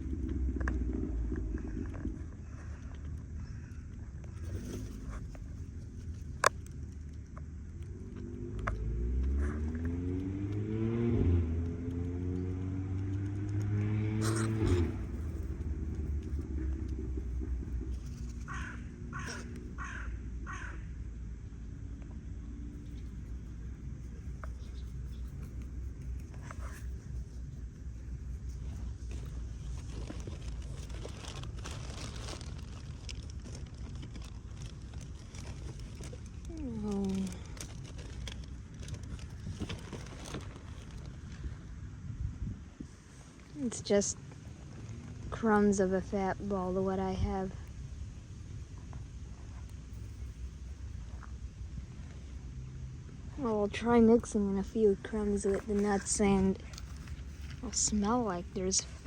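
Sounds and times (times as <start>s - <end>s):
low rumble: 0.0s - 59.0s
light clicks and crinkling: 0.1s - 10.6s, 22.0s - 41.5s, 54.2s - 59.0s
car engine accelerating: 7.8s - 18.6s.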